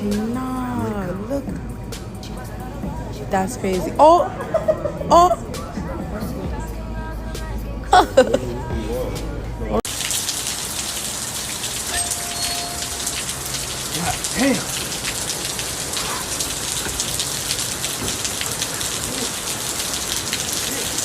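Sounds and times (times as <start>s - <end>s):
heavy rain falling: 9.9s - 21.0s.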